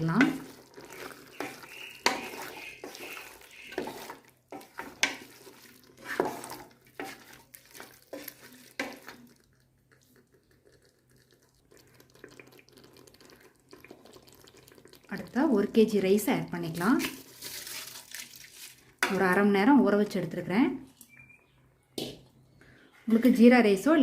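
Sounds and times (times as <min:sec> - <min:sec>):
spoon scraping a metal pot: 0:00.0 - 0:09.4.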